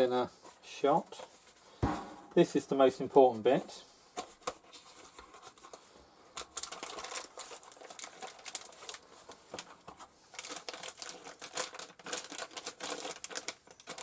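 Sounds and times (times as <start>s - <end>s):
packaging crinkling: 6.4s - 14.0s.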